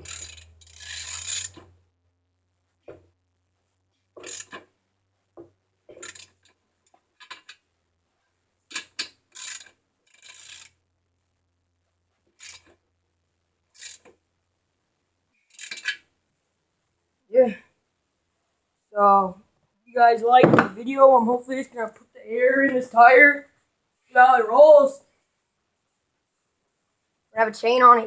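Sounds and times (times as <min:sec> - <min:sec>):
bike parts scraping and knocking: 0:00.0 - 0:01.8, 0:02.8 - 0:03.1, 0:03.9 - 0:07.6, 0:08.7 - 0:10.8, 0:12.3 - 0:12.8, 0:13.7 - 0:14.2, 0:15.4 - 0:16.1, 0:20.3 - 0:20.8.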